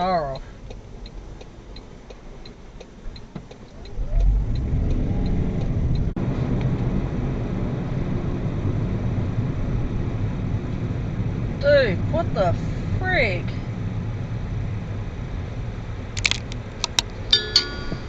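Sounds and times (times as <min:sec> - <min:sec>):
car turn indicator ticking: 0:00.0 - 0:06.2
road noise: 0:00.0 - 0:18.0
car engine accelerating: 0:00.7 - 0:17.3.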